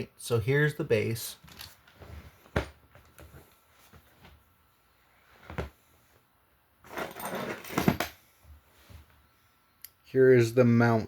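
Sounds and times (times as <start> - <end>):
metal parts clattering and rattling: 6.8 - 8.2.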